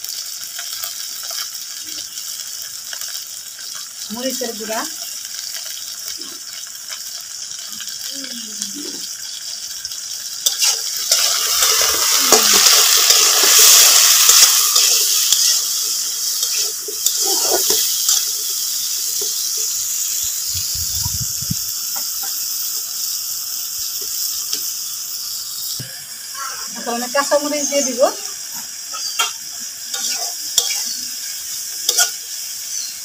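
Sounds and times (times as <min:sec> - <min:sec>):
beans sizzling in hot oil: 0:00.0 - 0:33.0.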